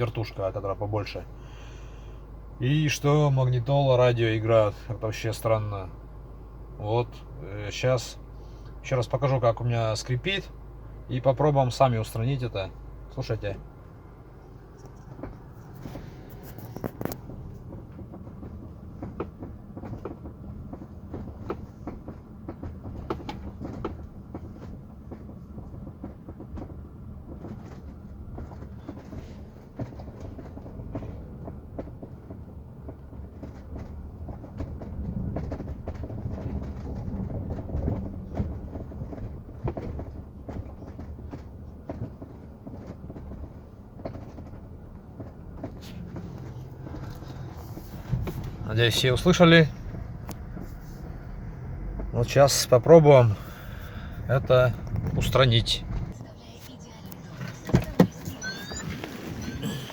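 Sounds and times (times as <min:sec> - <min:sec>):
low road rumble: 0:00.0 - 0:59.9
rear seat creaking: 0:14.3 - 0:59.9.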